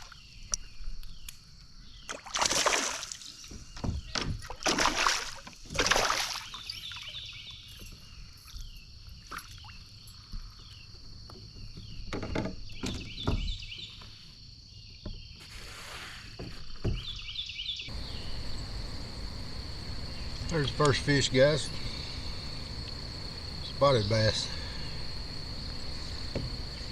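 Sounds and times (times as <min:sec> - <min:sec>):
insect drone: 0:04.8 - 0:26.9
short chirping calls: 0:17.0 - 0:26.9.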